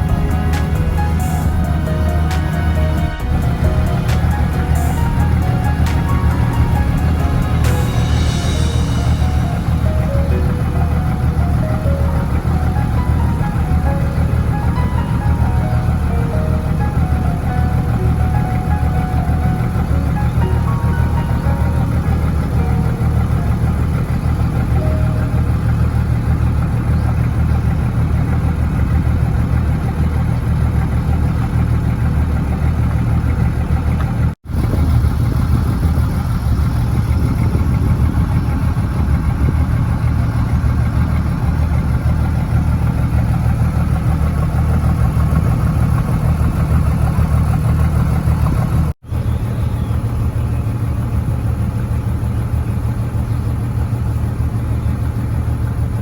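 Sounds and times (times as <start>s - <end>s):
boat engine humming: 0.0s - 56.0s.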